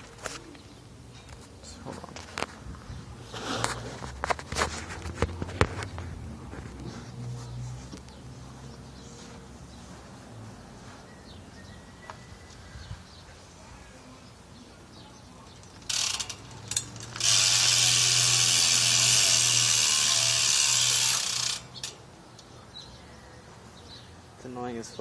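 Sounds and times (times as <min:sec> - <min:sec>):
bicycle hub ratcheting: 0:15.5 - 0:22.0.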